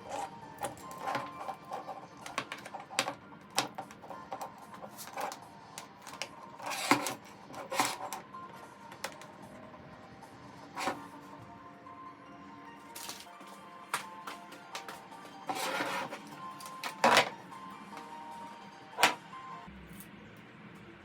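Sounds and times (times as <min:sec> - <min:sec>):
hard objects clicking and knocking: 0:00.0 - 0:08.3, 0:14.0 - 0:17.4
faint background music: 0:00.0 - 0:21.0.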